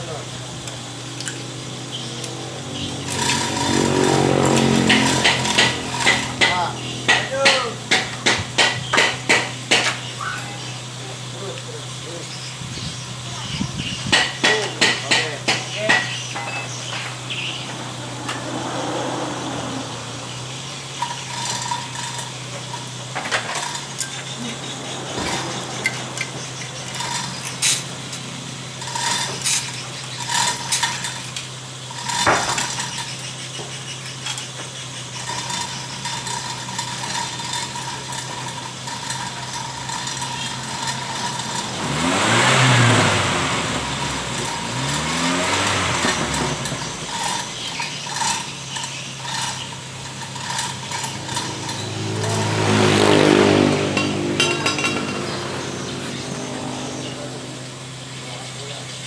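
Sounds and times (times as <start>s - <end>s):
metallic tool clinks: 0.0s - 10.8s, 14.1s - 57.4s
engine revving: 0.0s - 59.0s
low engine hum: 0.0s - 59.0s.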